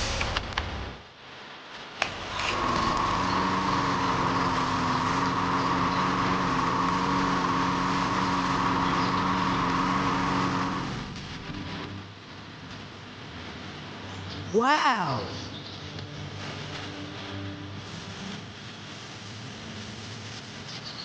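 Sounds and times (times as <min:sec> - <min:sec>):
small motor whining: 0:02.0 - 0:11.8.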